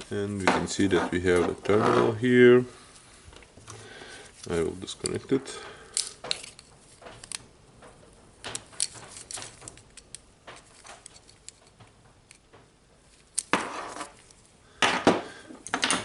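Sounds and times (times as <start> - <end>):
small clicks and scrapes of wire terminals: 8.5 - 12.4.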